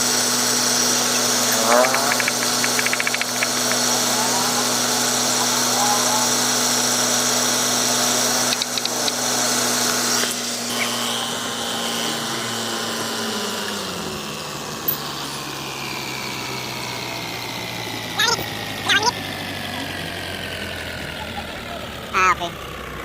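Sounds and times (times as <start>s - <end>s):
machine humming: 0.0s - 19.4s
ticking: 1.1s - 3.9s.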